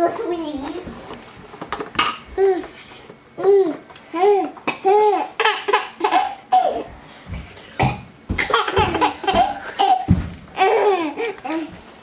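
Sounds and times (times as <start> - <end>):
young child laughing: 8.4 - 11.7.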